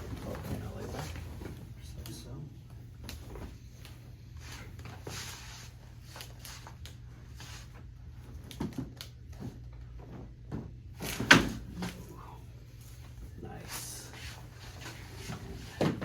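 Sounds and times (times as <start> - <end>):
rustling and handling: 11.0 - 16.0.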